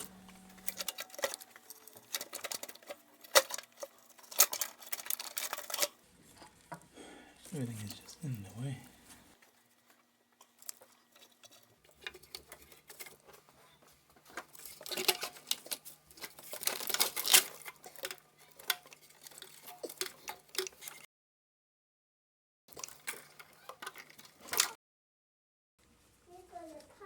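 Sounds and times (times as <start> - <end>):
hand tools and engine parts rattling: 0.0 - 6.6, 10.4 - 21.0.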